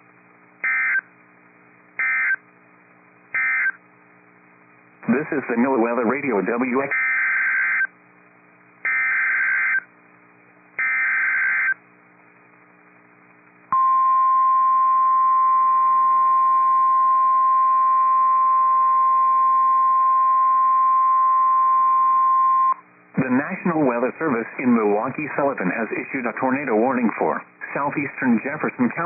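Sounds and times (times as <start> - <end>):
steady warning alarm tone: 0.6 - 1.0, 2.0 - 2.4, 3.4 - 3.8, 6.9 - 7.9, 8.9 - 9.8, 10.8 - 11.8.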